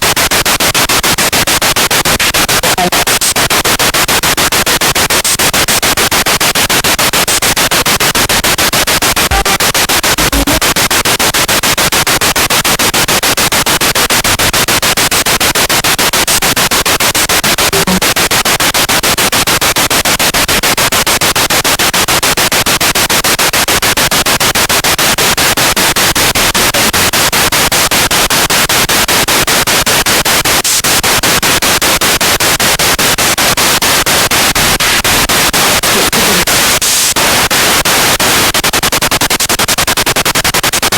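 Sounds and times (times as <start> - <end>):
radio static stuttering: 1.8 - 11.9, 17.4 - 18.8, 33.6 - 38.6.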